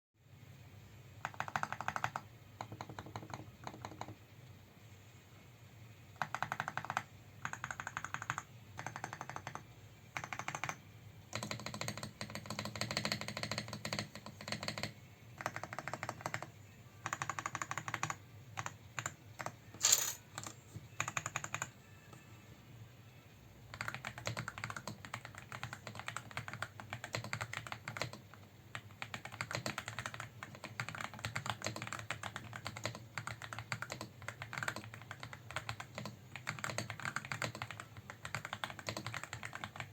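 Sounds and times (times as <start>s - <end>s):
mechanical keyboard typing: 1.2s - 4.2s, 6.2s - 21.7s, 23.7s - 39.9s
sharp key clack: 19.8s - 20.3s.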